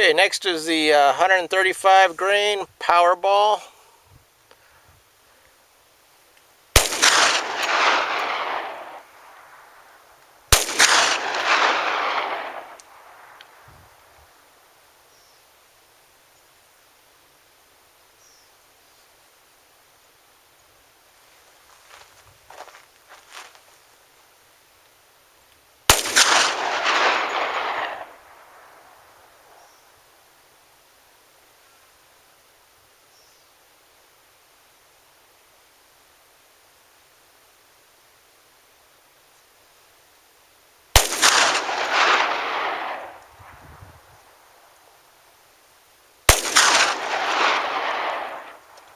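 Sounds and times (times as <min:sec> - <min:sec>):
pistol shots echoing: 0:06.8 - 0:09.6, 0:10.5 - 0:13.4, 0:25.9 - 0:29.2, 0:41.0 - 0:43.6, 0:46.3 - 0:48.9.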